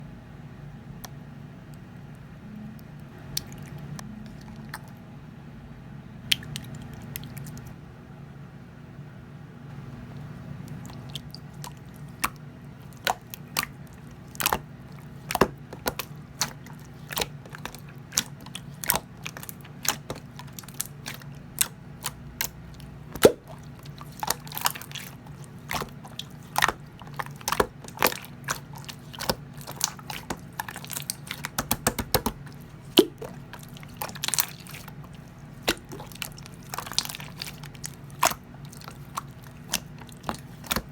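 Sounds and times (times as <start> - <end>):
low steady hum: 0.0 - 40.9
slime clicking and popping: 10.8 - 40.9.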